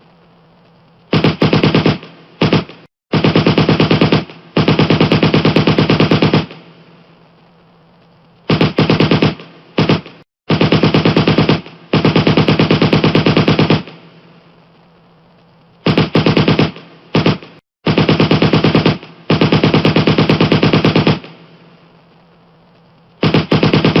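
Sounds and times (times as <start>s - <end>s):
pistol shots in bursts: 1.1s - 6.9s, 8.5s - 14.3s, 15.8s - 21.7s, 23.2s - 24.0s.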